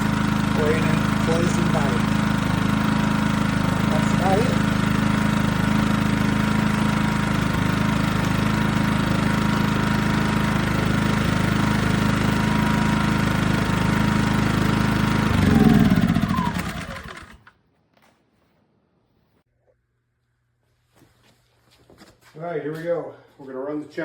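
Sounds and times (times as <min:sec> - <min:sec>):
generator engine running: 0:00.0 - 0:17.6.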